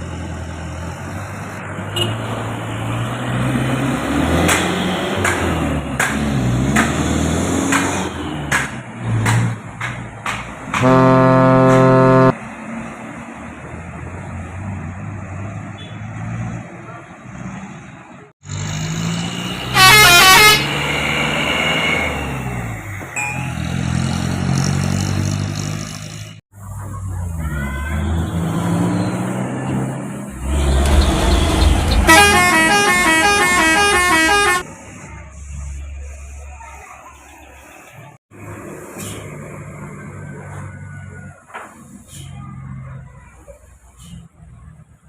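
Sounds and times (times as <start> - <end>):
heavy trucks passing: 0.0 - 45.0
air horn blast: 10.8 - 12.4, 19.7 - 20.7, 31.9 - 34.7
warbling multi-note horn: 10.8 - 12.4.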